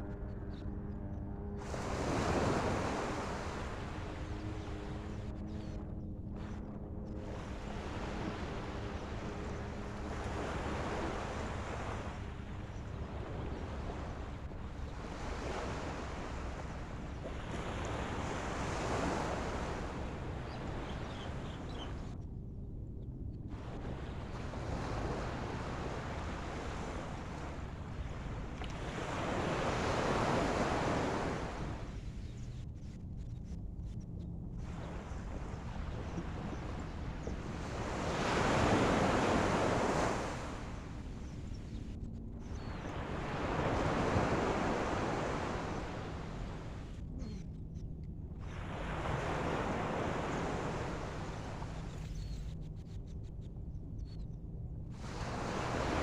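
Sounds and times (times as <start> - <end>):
wind rumbling on microphone: 0.0 - 56.0
ocean surf washing ashore: 1.6 - 4.3, 23.5 - 32.0, 34.6 - 41.3, 42.8 - 47.2, 48.4 - 51.9, 55.0 - 56.0.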